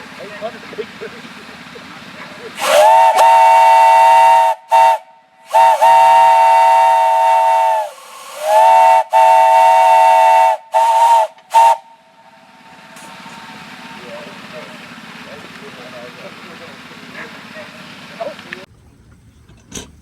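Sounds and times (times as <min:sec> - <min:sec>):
steam hissing: 0:00.0 - 0:18.4
three-chime steam whistle blasts: 0:02.6 - 0:12.3.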